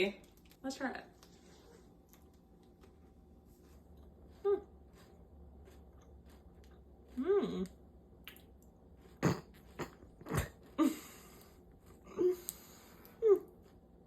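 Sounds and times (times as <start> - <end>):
person chewing: 1.2 - 14.0
person humming mm: 7.1 - 7.8.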